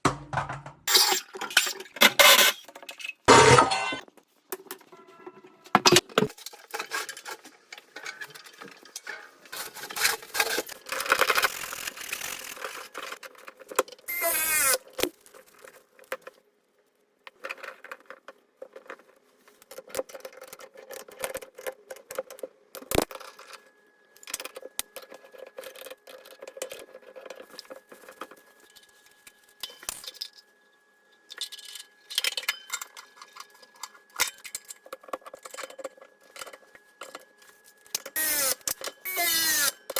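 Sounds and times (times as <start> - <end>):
metal tools clinking and rattling: 0.9 - 4.1, 29.6 - 30.4, 31.3 - 37.3.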